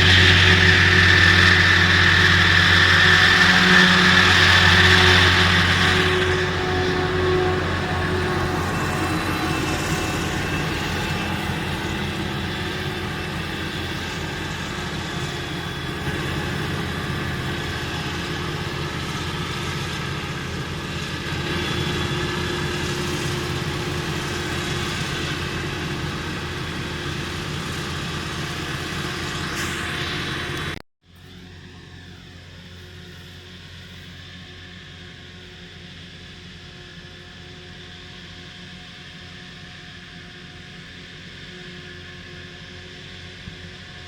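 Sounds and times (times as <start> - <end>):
tractor engines: 0.0 - 30.8, 40.0 - 44.0.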